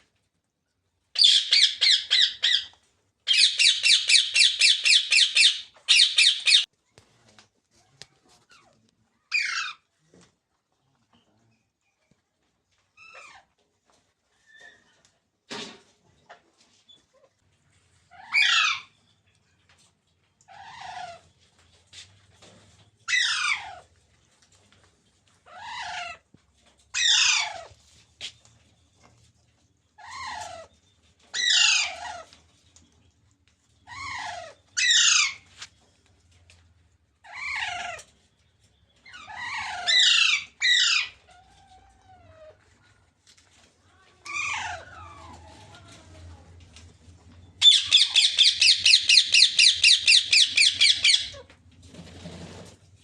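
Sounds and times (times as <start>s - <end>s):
parakeet harsh calls: 1.2s - 2.7s, 3.3s - 6.7s, 18.2s - 18.9s, 27.0s - 27.6s, 31.4s - 32.2s, 33.9s - 35.4s, 47.6s - 51.4s.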